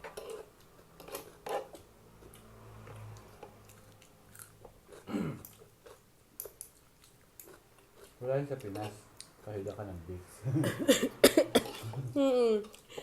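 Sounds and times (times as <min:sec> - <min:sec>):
person chewing and biting food: 0:00.0 - 0:09.4.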